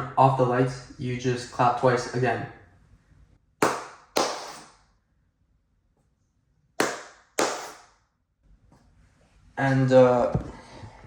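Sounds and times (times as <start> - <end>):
sharp hand claps: 3.6 - 4.7, 6.8 - 7.8.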